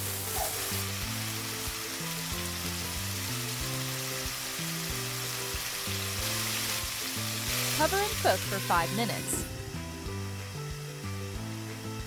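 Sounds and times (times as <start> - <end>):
chicken sizzling in hot oil: 0.0 - 12.0
low background music: 0.0 - 12.0.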